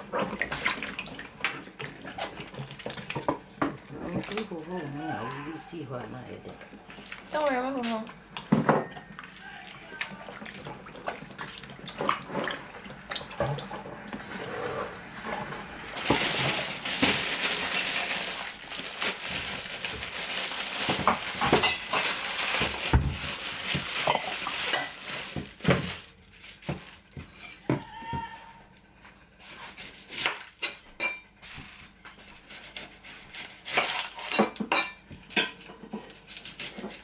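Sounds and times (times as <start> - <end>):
dishes and cutlery clattering: 20.9 - 22.2, 30.6 - 31.3, 33.7 - 36.2.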